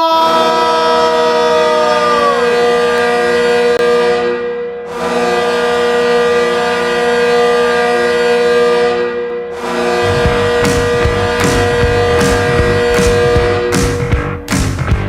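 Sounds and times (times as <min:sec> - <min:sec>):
goal horn blasts: 0:09.7 - 0:14.3.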